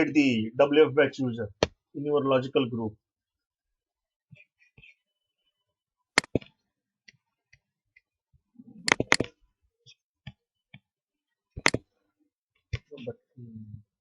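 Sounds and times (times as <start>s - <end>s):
computer mouse clicks: 6.2s - 6.5s, 8.8s - 9.4s, 11.6s - 11.9s.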